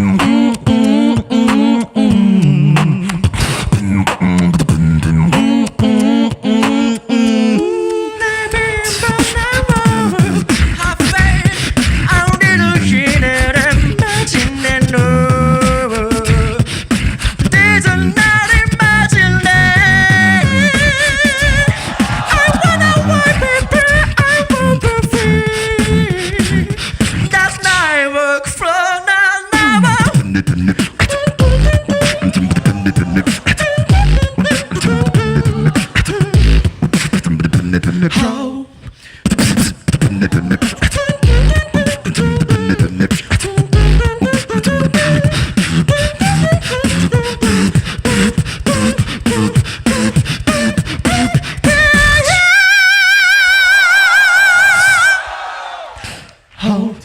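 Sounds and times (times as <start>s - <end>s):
beatbox vocal drums: 0.0s - 55.4s
sung and hummed melody: 29.5s - 37.5s, 39.4s - 52.6s.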